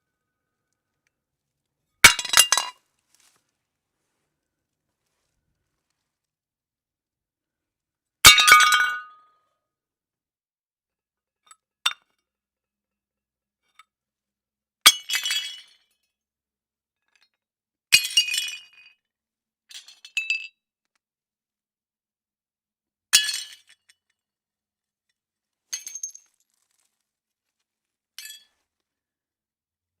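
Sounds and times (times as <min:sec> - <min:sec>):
plates smashing: 0:02.1 - 0:02.7.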